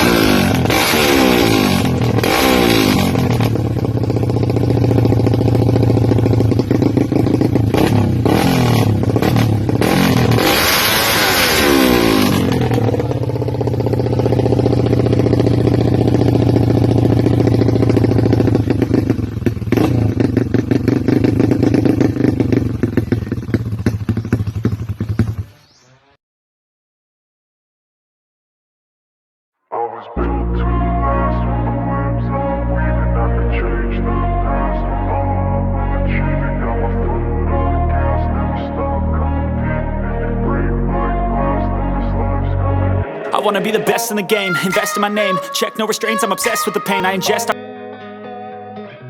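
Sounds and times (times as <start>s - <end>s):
motorcycle engine revving: 0.0s - 25.9s.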